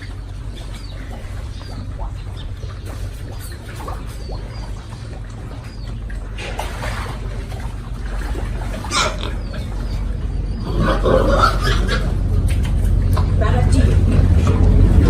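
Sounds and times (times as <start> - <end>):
steady low hum: 0.0 - 15.0
pigs squealing and grunting: 8.2 - 12.4.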